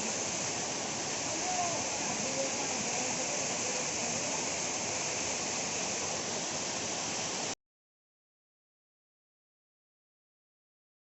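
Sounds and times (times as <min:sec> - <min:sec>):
waterfall rushing: 0:00.0 - 0:07.6.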